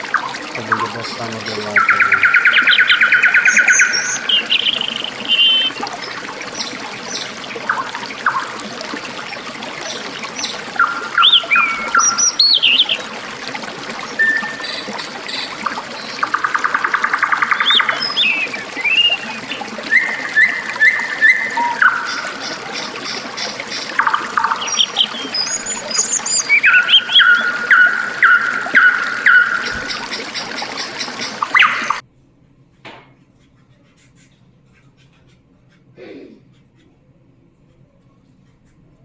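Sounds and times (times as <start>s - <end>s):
trickling water: 0.0s - 32.1s
canaries singing: 0.6s - 8.5s, 14.1s - 32.0s.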